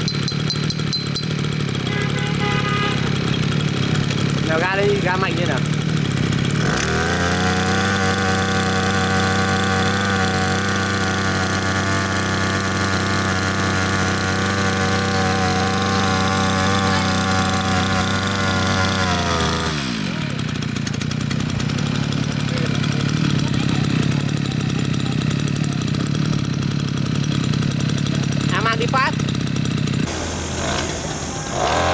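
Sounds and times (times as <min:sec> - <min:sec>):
brush cutter engine revving: 0:00.0 - 0:31.9.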